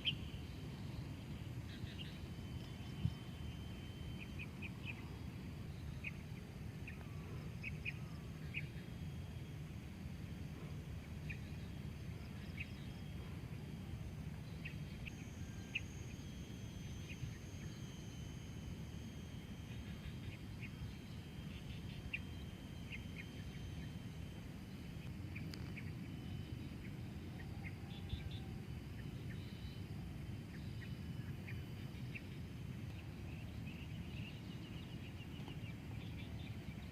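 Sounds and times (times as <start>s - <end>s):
faint high steady tone: 0.0s - 36.9s
steady low rumble: 0.0s - 36.9s.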